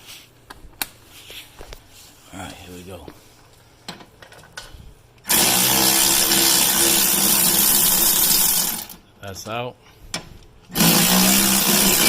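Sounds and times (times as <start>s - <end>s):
cordless drill whining: 5.3s - 9.0s, 10.7s - 12.0s.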